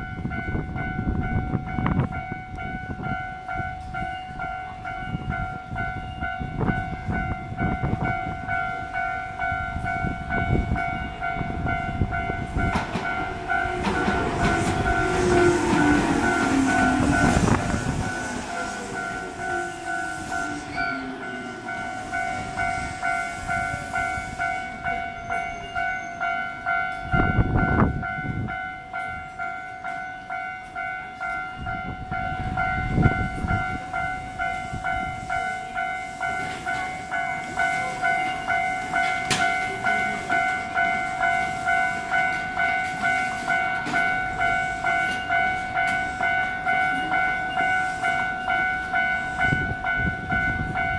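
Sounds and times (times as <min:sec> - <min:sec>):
level crossing warning bell: 0:00.0 - 0:50.9
electric train motor whine: 0:12.8 - 0:24.5.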